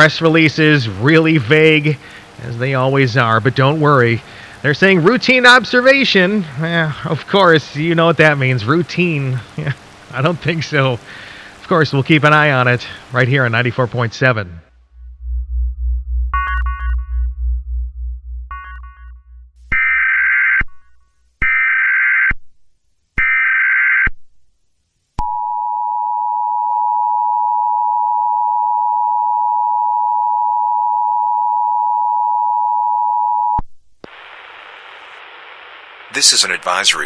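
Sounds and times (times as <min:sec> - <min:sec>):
digital data bursts: 0:00.0 - 0:13.8
radio hiss: 0:00.0 - 0:14.7, 0:34.0 - 0:37.0
two-tone attention signal: 0:16.4 - 0:17.3.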